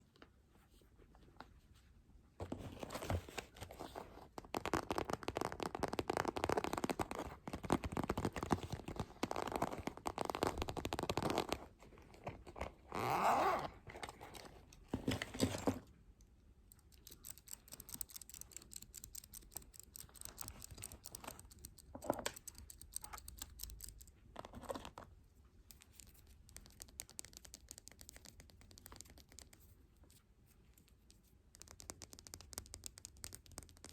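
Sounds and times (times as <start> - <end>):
quick ticking and scratching: 16.7 - 24.1, 25.7 - 33.9.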